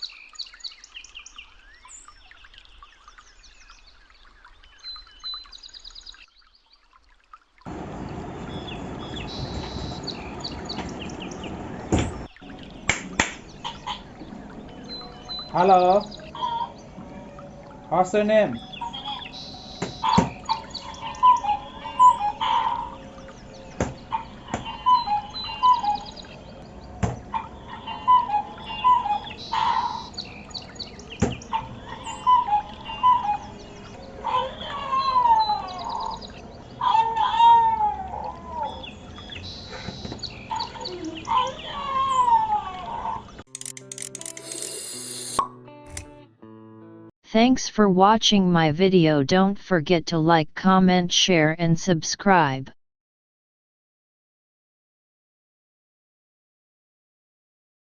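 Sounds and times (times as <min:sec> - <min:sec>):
small birds chirping: 0:00.0 - 0:45.4
toy click: 0:43.5 - 0:46.1.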